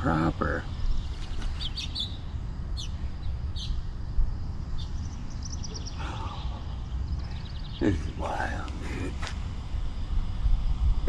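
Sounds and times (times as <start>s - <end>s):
birds chirping: 0.0s - 11.0s
steady low rumble: 0.0s - 11.0s
bird trill: 0.2s - 8.7s.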